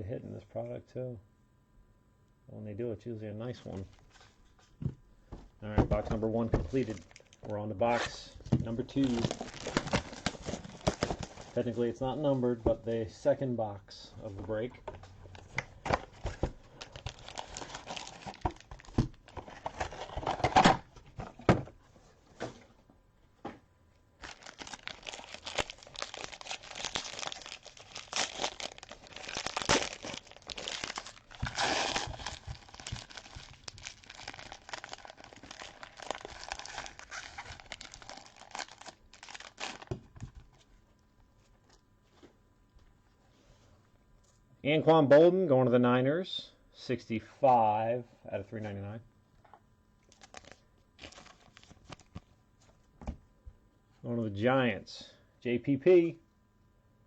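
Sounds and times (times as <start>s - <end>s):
plastic packaging crinkling and tearing: 6.4s - 11.8s, 15.3s - 20.8s, 24.2s - 40.4s, 50.0s - 52.3s.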